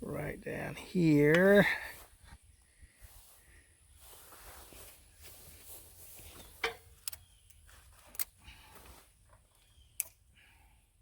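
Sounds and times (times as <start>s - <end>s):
wire cutters snipping zip ties: 8.0s - 8.4s.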